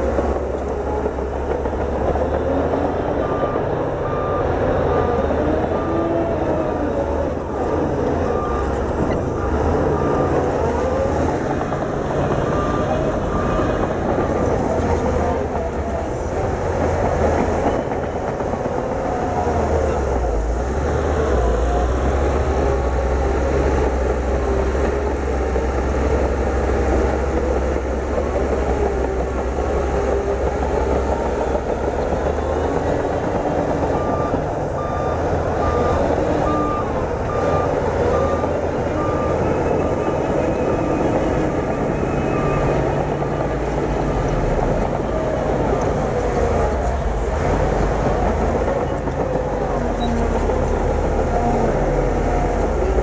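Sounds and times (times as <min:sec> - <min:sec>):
bulldozer diesel engine rumbling: 0:00.0 - 0:53.0
reversing alarm beeping: 0:02.6 - 0:16.0, 0:29.8 - 0:43.3.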